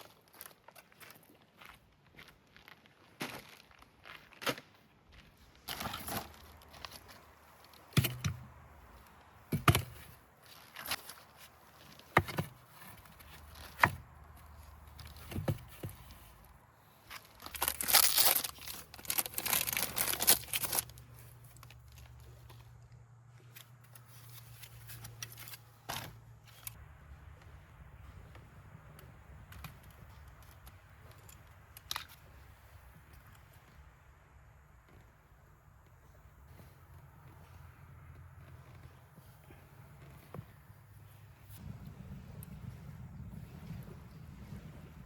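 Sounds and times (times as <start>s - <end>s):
crinkling and tearing: 10.4s - 26.8s.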